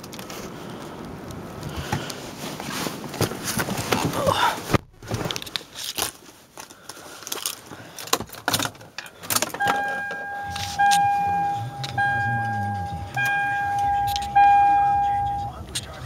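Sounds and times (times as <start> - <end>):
car warning chime: 9.6 - 16.0
low engine rumble: 9.6 - 16.0.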